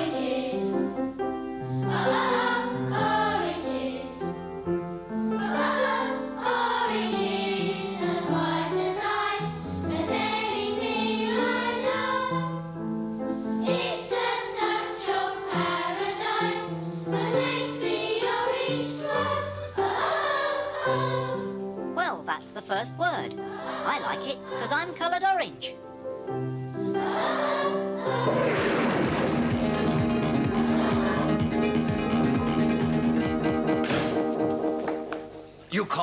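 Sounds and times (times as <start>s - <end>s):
choir singing: 0.0s - 1.0s, 1.8s - 4.4s, 5.3s - 12.6s, 13.6s - 21.6s, 23.4s - 25.0s, 26.8s - 32.6s
instrumental backing: 0.0s - 36.0s.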